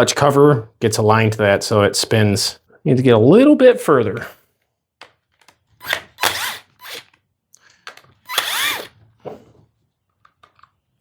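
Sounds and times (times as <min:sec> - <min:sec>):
cordless drill spinning: 0:05.8 - 0:07.2, 0:07.8 - 0:09.4.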